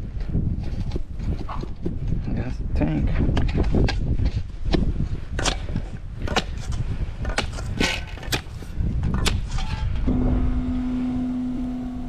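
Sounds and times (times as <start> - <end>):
metal tool striking rocky ground: 3.3 - 10.0
low rumble: 8.7 - 12.0.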